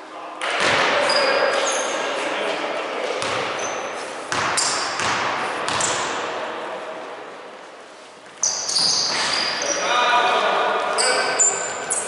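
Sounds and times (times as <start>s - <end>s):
echoing hall noise: 0.0s - 12.0s
sneaker squeaks: 0.6s - 2.1s, 3.2s - 6.2s, 8.3s - 10.0s, 10.9s - 12.0s
basketball bouncing on gym floor: 3.2s - 3.7s, 4.3s - 6.2s.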